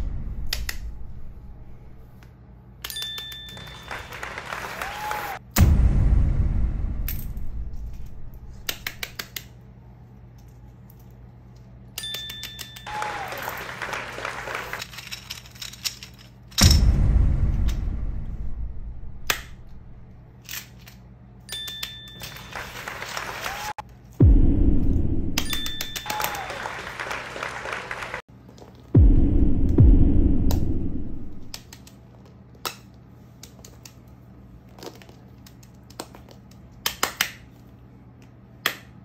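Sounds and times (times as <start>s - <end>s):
deep boom: 0.0s - 2.0s, 5.5s - 8.7s, 16.6s - 20.2s, 24.2s - 25.9s, 29.0s - 31.5s
high ringing dings: 2.8s - 4.1s, 21.5s - 22.6s, 25.4s - 26.2s.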